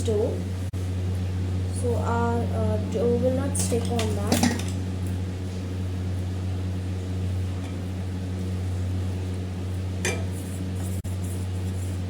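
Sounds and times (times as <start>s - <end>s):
low electrical hum: 0.0s - 12.0s
utensil clinking against dish: 3.6s - 4.8s, 10.0s - 10.4s.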